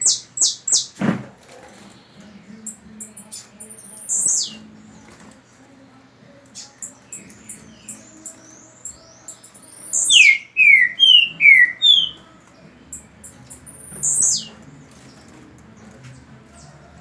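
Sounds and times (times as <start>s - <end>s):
short high bird chirps: 9.6s - 12.2s.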